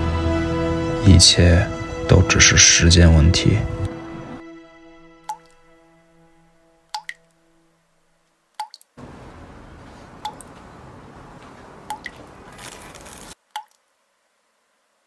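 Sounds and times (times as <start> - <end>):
water drops plinking: 5.3 - 5.6, 6.9 - 7.3, 8.6 - 8.9, 10.2 - 10.8, 11.8 - 12.4.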